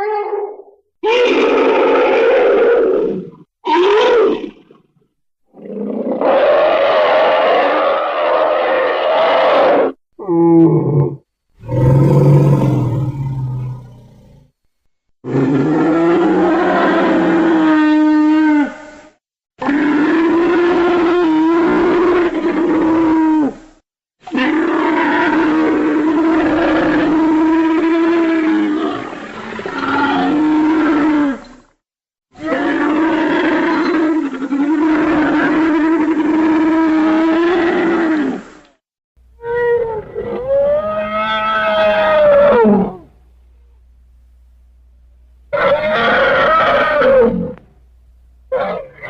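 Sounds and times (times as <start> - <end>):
animal roars and calls: 0.0 - 4.9, 5.5 - 14.6, 15.2 - 23.6, 24.2 - 31.8, 32.4 - 38.7, 39.4 - 43.2, 45.5 - 47.7, 48.5 - 49.0
deep roar: 11.6 - 14.5.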